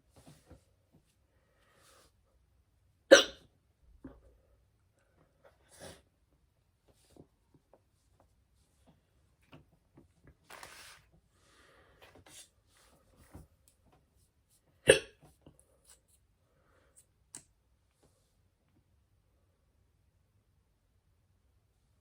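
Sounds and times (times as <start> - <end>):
woman hiccuping: 3.1 - 3.4, 14.9 - 15.1.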